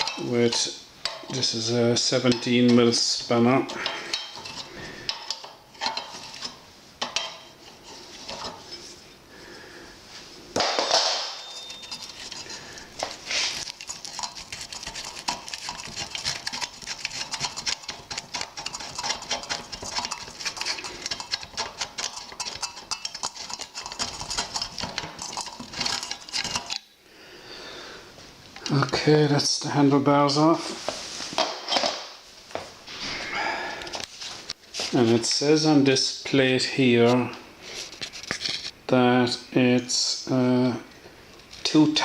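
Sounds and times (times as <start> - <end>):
spanner clinking on metal: 0.0 - 2.9, 3.7 - 7.5, 11.2 - 12.5, 13.7 - 26.9
metallic clank: 10.6 - 12.3.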